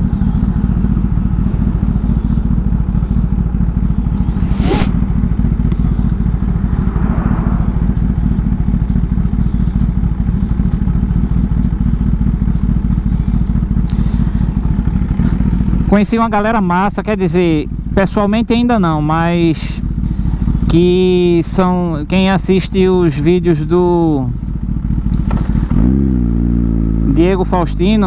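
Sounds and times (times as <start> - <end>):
sharp sound with rising squeal: 0.0 - 5.2
wind buffeting microphone: 0.0 - 9.5
motorcycle engine running: 0.0 - 28.0.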